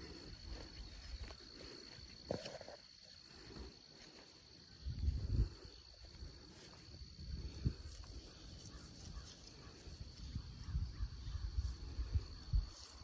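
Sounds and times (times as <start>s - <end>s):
footsteps: 0.0s - 9.5s
insects trilling: 0.0s - 13.0s.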